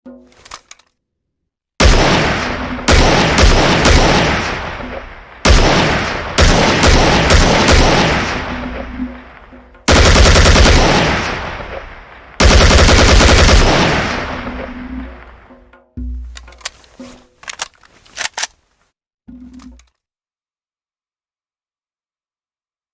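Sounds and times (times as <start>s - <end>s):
full-auto gunfire bursts: 1.8s - 15.3s
rifle shots with echo: 1.8s - 15.5s.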